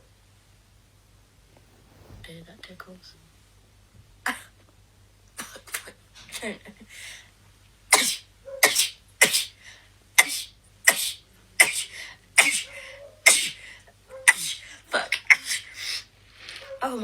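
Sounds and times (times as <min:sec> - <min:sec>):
woman sneezing: 0:07.9 - 0:09.6, 0:10.2 - 0:12.7, 0:14.3 - 0:16.0.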